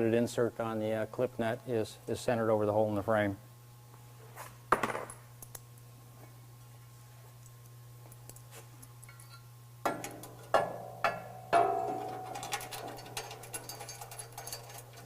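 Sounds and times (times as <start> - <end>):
metal clanking on steel frame: 9.9 - 15.0.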